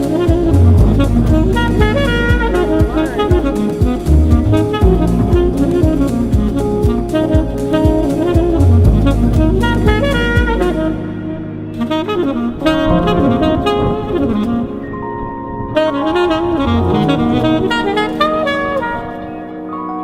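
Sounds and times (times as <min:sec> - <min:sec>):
drums and bass: 0:00.0 - 0:11.1
saxophone: 0:00.0 - 0:20.0.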